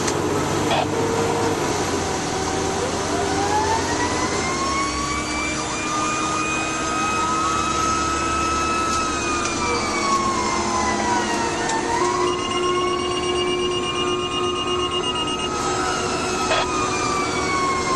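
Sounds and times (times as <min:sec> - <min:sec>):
fire engine siren wailing: 0:00.0 - 0:17.9
truck engine drone: 0:00.0 - 0:17.9
steady high tone: 0:12.1 - 0:17.1.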